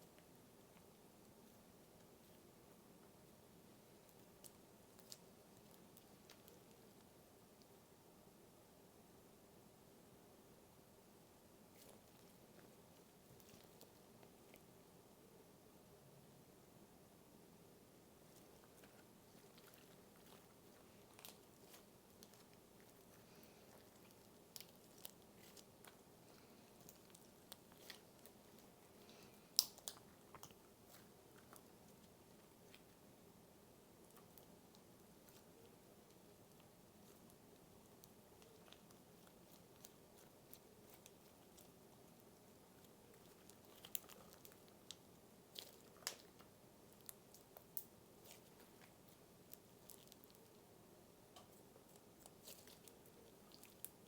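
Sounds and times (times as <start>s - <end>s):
low steady hiss: 0.0s - 54.0s
slime crackling and popping: 18.3s - 33.0s, 34.0s - 50.6s, 51.4s - 54.0s.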